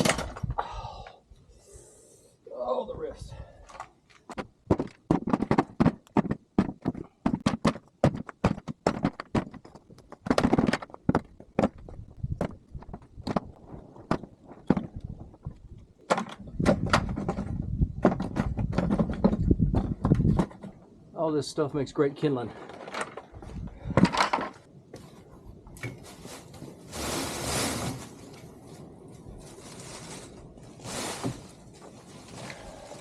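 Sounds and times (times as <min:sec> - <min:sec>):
wood pieces knocking and clacking: 0:03.7 - 0:21.0, 0:22.6 - 0:24.7
wood scraping and rustling: 0:03.7 - 0:21.0, 0:22.4 - 0:33.0.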